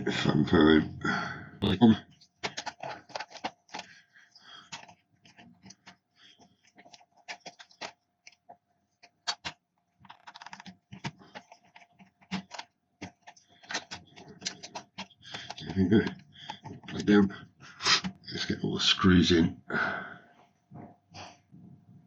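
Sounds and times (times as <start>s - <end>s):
plastic parts clicking and tapping: 2.2s - 17.2s.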